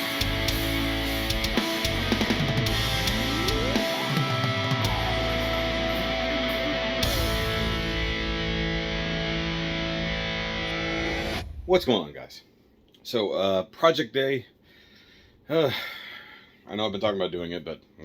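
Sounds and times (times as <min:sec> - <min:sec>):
rock music: 0:00.0 - 0:11.8.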